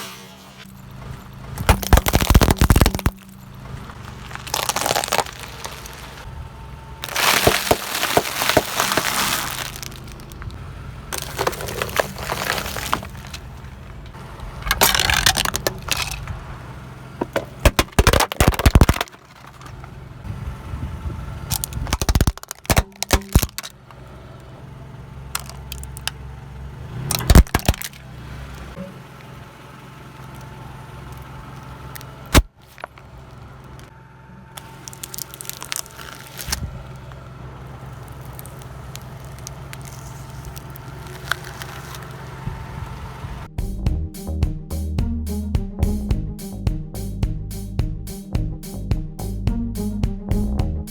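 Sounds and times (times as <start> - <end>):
car engine idling: 0.0 - 50.9
tyres crushing brittle objects: 1.6 - 6.3, 7.0 - 16.4, 17.2 - 19.9, 21.5 - 24.0, 25.3 - 26.2, 27.0 - 28.8, 31.9 - 33.9, 34.6 - 42.5.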